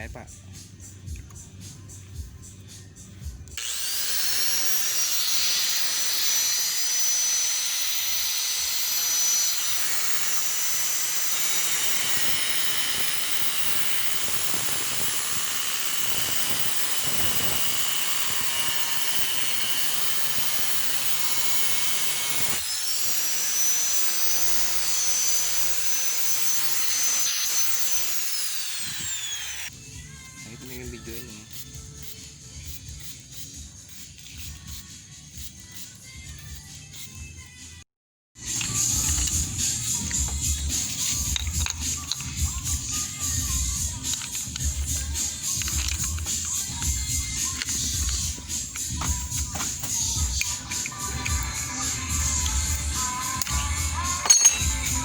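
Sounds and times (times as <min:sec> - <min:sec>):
electric grinder on saw blade: 0:03.6 - 0:29.7, 0:38.4 - 0:55.0.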